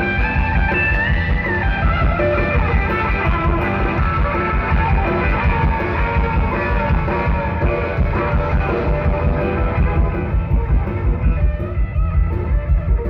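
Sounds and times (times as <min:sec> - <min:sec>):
drum and bass beat: 0:00.0 - 0:13.0
electric guitar: 0:00.0 - 0:13.0
rockabilly band playing: 0:00.0 - 0:13.0.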